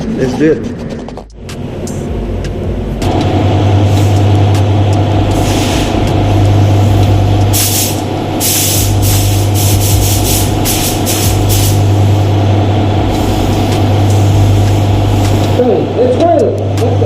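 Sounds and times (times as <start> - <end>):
steady low hum: 0.0 - 17.0
spray gun hissing bursts: 5.3 - 6.1, 6.7 - 12.4, 13.0 - 15.7.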